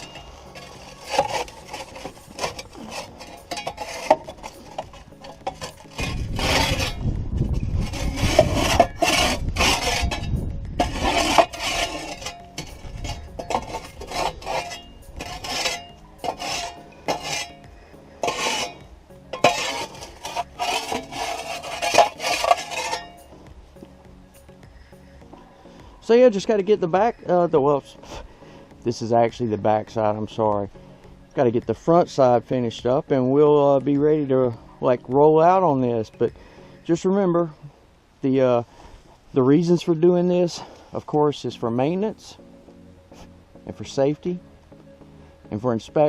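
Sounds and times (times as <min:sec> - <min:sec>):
metal tool scraping dirt: 0:00.0 - 0:24.7, 0:38.4 - 0:42.5
low rumble: 0:04.9 - 0:11.2.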